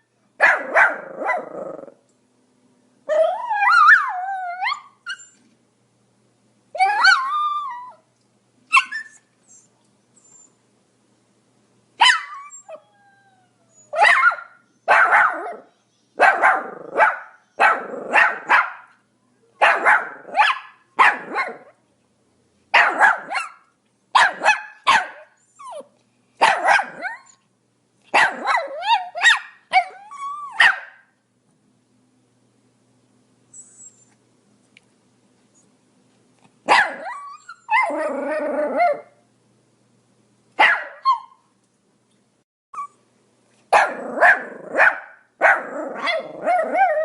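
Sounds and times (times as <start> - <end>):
small dog barking: 0.4 - 1.6, 12.0 - 12.5, 13.9 - 19.0, 19.6 - 21.8, 22.7 - 25.4, 26.4 - 27.3, 28.1 - 31.1, 36.6 - 38.1, 40.6 - 41.4, 43.7 - 46.9.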